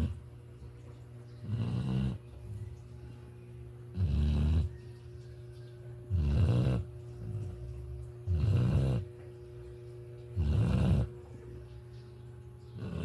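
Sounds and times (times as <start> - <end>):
person snoring: 3.9 - 4.7, 8.3 - 9.1.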